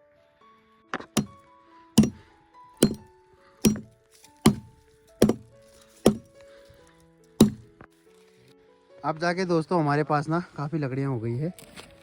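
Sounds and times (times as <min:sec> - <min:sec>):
chopping firewood: 0:02.0 - 0:02.2, 0:02.8 - 0:06.4, 0:07.4 - 0:07.8
background music: 0:02.0 - 0:09.4.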